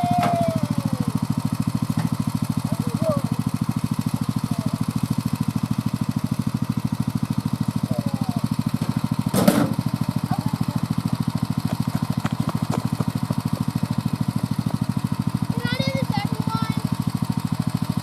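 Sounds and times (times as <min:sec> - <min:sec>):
tractor engine putter: 0:00.0 - 0:05.4, 0:08.5 - 0:17.9.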